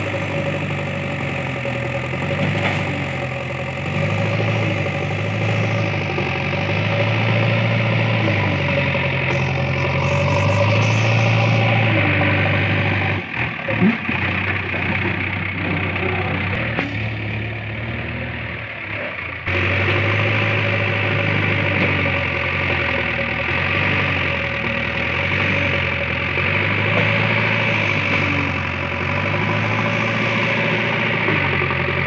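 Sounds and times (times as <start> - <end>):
backhoe diesel engine droning: 0.0 - 32.0.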